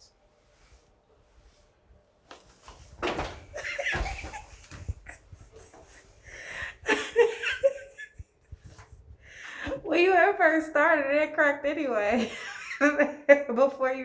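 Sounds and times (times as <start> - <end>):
woman laughing and giggling: 3.4 - 8.9, 12.0 - 13.5.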